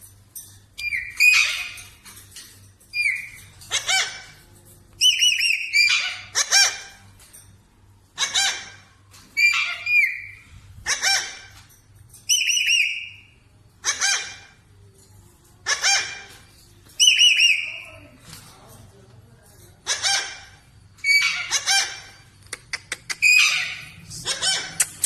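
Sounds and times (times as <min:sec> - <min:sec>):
parrot harsh calls: 0:00.8 - 0:02.0, 0:03.0 - 0:04.4, 0:05.0 - 0:07.0, 0:08.2 - 0:11.6, 0:12.3 - 0:14.6, 0:15.6 - 0:16.4, 0:19.8 - 0:22.3, 0:23.2 - 0:25.0.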